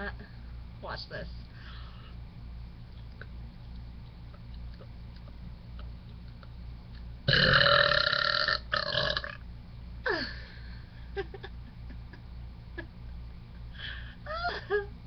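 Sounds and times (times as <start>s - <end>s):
woman burping: 7.3s - 9.4s.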